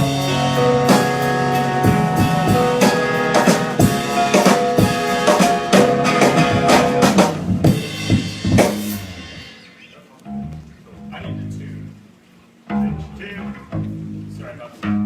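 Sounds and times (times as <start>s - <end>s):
live band playing: 0.0s - 10.5s.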